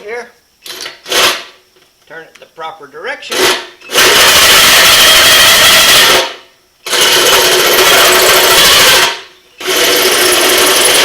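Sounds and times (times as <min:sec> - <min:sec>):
power drill cutting sheet metal: 0:03.3 - 0:11.0.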